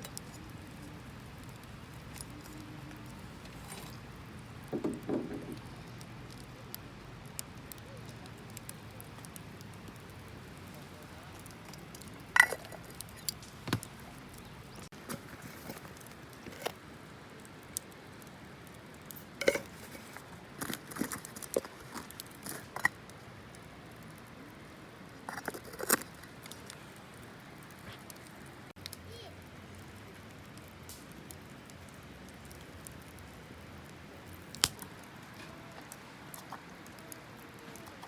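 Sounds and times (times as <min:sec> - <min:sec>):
small hard items clinking: 0:11.5 - 0:16.8, 0:19.4 - 0:23.0, 0:25.3 - 0:26.6.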